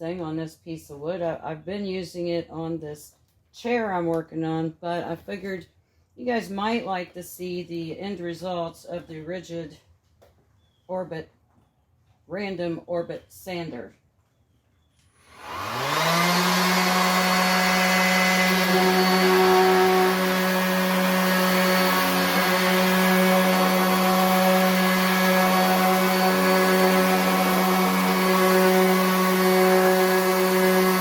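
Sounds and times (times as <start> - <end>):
orbit sander whining: 15.1 - 31.0.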